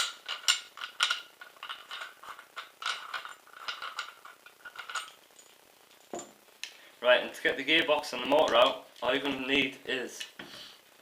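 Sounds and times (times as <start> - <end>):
metal parts clinking and scraping: 0.0 - 6.4.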